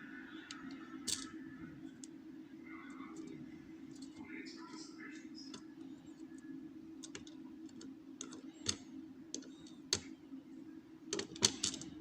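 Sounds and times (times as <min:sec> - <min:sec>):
lock parts clicking and tapping: 0:11.1 - 0:11.9.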